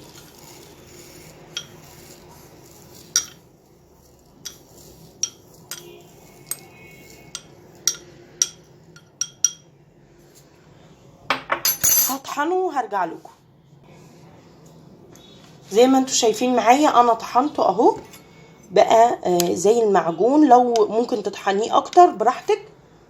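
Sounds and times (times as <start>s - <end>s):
kitchen utensils clinking: 5.2s - 9.7s, 11.3s - 12.4s.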